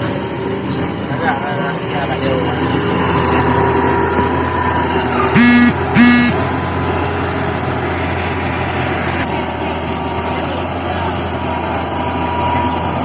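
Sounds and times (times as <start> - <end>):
engine-like hum: 0.0 - 13.0
short horn toots: 5.4 - 6.4.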